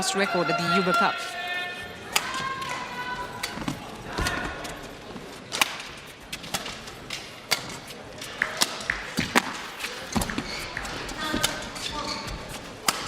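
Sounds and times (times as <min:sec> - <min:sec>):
crowd murmur: 0:00.0 - 0:13.0
rackets hitting shuttlecock: 0:02.1 - 0:13.0
shoe squeaks on court: 0:09.8 - 0:12.8.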